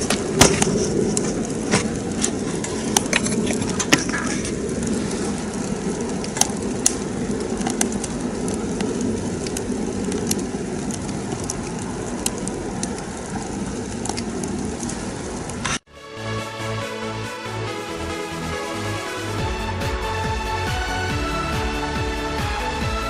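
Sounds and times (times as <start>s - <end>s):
stove draft rushing: 0.0s - 15.9s
wood crackling and popping: 0.0s - 15.9s
electronic music: 15.9s - 23.0s.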